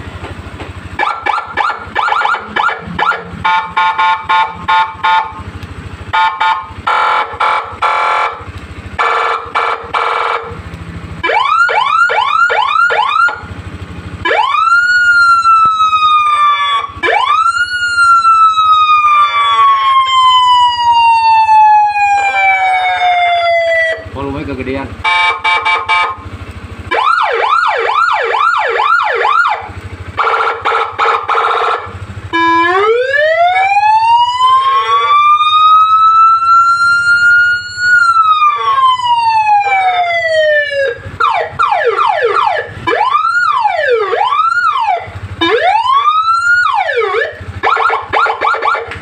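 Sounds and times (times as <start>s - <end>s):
electronic siren cycling tones: 1.0s - 5.4s, 11.2s - 13.5s, 14.2s - 24.1s, 26.9s - 48.9s.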